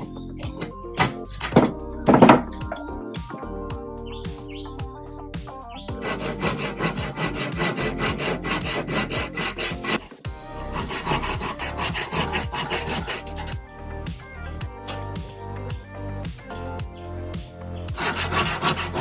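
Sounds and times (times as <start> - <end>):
sanding wood by hand: 6.0 - 13.5, 18.0 - 19.0.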